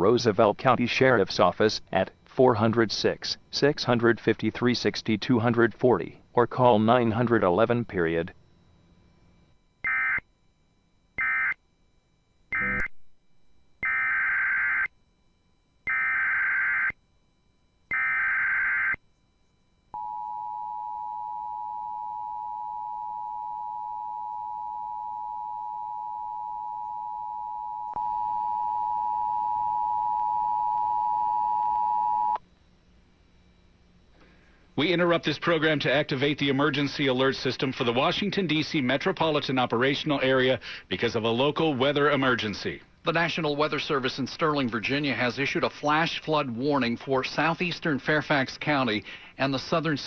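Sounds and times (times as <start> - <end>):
dual-tone attention alarm: 6.6 - 32.4
harsh buzzy digital data bursts: 12.5 - 12.9.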